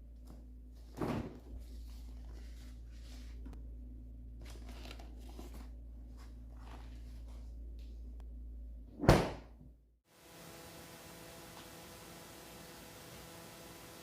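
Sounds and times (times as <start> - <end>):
steady low hum: 0.0 - 9.0
faint rustling and handling: 0.1 - 3.6, 4.3 - 8.2.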